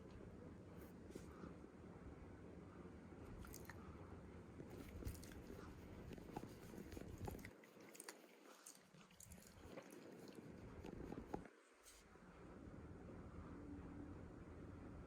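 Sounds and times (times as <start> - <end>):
dog chewing and crunching: 3.3 - 3.8, 4.7 - 11.5.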